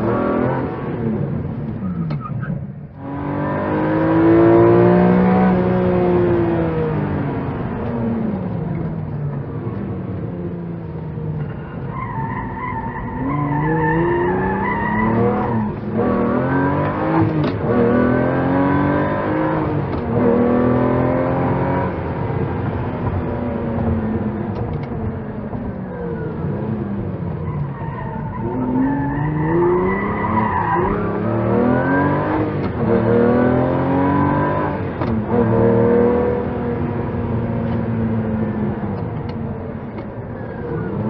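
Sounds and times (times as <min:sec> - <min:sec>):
car engine revving and accelerating: 0:00.0 - 0:41.0.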